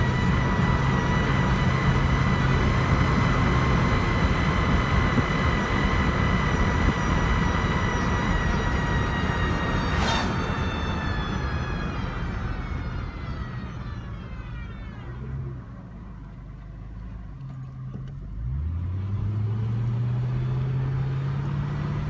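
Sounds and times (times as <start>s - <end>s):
engine note rising: 0.0s - 17.1s
vehicle drive whine: 0.0s - 22.0s.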